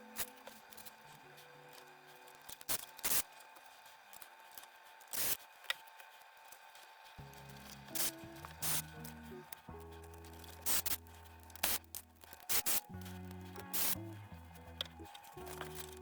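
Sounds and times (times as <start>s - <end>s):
faint background music: 0.0s - 16.0s.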